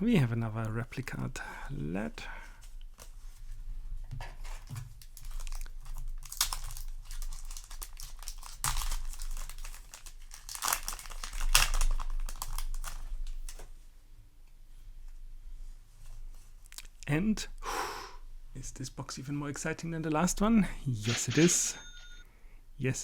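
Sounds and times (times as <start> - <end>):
foil wrapper crinkling and tearing: 4.6 - 13.6.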